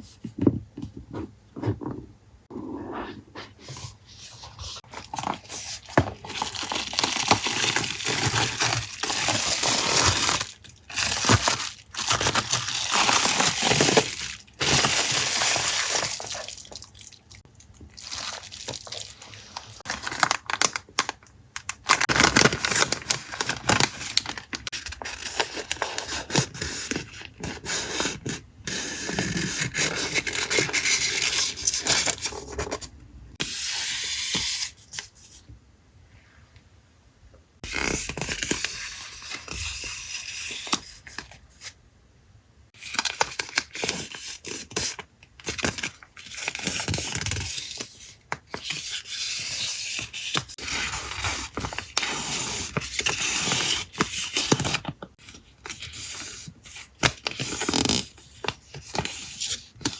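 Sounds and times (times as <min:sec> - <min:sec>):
packaging crinkling and rustling: 0:04.8 - 0:17.2, 0:17.9 - 0:27.4
packaging tearing: 0:04.9 - 0:16.9, 0:18.0 - 0:26.0.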